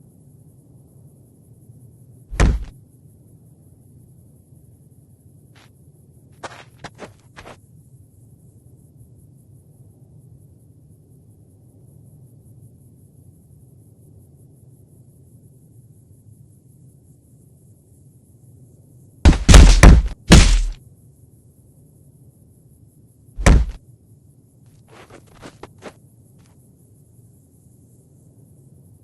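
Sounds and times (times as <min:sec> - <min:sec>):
faint low hum: 0:00.0 - 0:29.0
loud thuds and knocks: 0:02.3 - 0:02.8, 0:19.3 - 0:20.8, 0:23.4 - 0:23.8.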